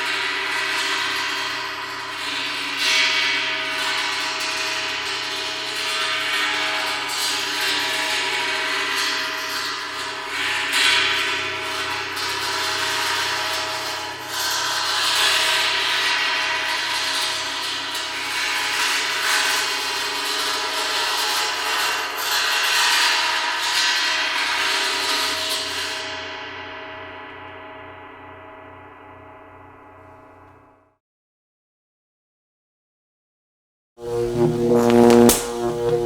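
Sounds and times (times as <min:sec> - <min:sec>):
synthesized drone: 0:34.0 - 0:36.0.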